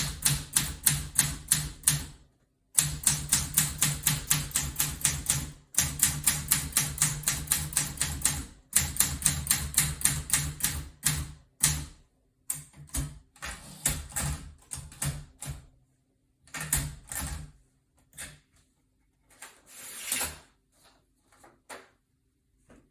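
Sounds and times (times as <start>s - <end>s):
manual typewriter typing: 0.0s - 2.2s, 2.8s - 12.0s, 12.6s - 15.7s, 16.5s - 17.5s.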